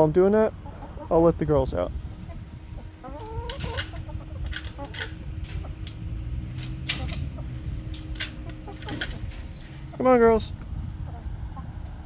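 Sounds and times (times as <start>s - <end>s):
hens clucking: 0.0s - 12.0s
sharp clicks and rustles: 2.9s - 11.0s.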